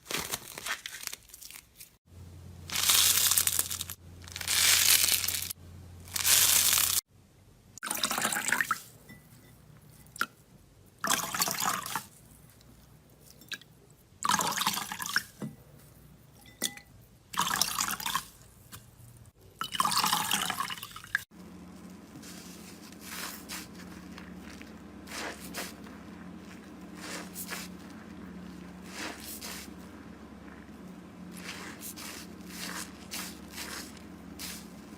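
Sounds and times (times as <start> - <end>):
steady low hum: 2.1 - 7.8, 21.3 - 34.9
slime squishing: 21.3 - 34.9.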